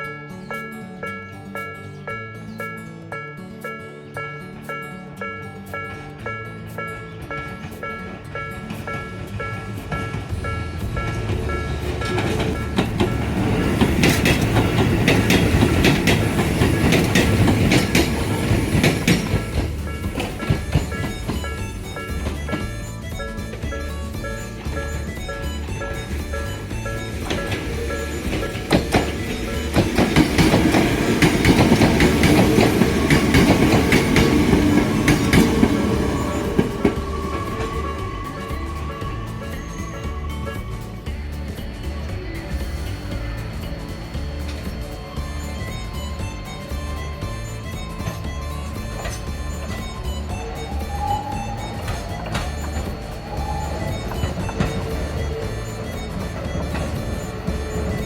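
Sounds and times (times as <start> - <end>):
background music: 0.0 - 58.0
electric train rumbling past: 0.0 - 58.0
train wheels clacking on rail joints: 4.4 - 58.0.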